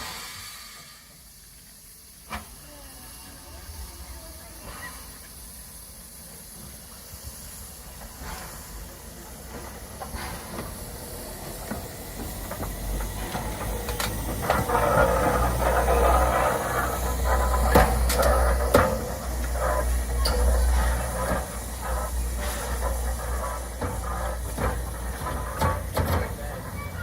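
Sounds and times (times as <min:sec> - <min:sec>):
steam locomotive hissing: 0:00.0 - 0:27.0
knocks and clanks: 0:11.6 - 0:27.0.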